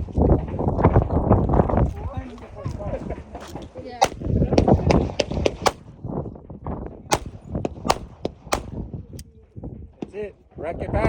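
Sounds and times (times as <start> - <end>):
gunshots: 4.0 - 6.0, 7.1 - 8.9.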